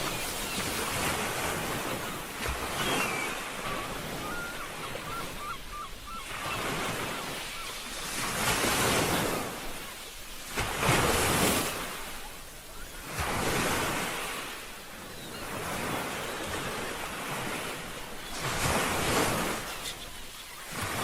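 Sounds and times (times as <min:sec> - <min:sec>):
ocean waves breaking: 0:00.0 - 0:21.0.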